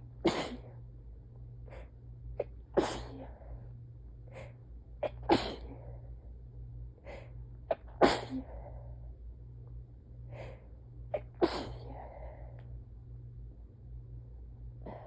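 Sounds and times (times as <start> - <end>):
person sneezing: 0.3 - 0.7, 2.4 - 3.3, 5.1 - 5.8, 7.7 - 8.5, 11.2 - 11.9.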